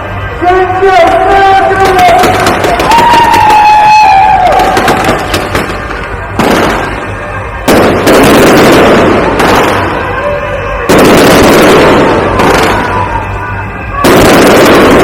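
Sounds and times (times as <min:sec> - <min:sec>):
firework shells booming: 0:01.8 - 0:03.4, 0:04.5 - 0:10.2, 0:10.9 - 0:13.4, 0:14.0 - 0:15.0
rolling rumble and crackle: 0:04.5 - 0:15.0.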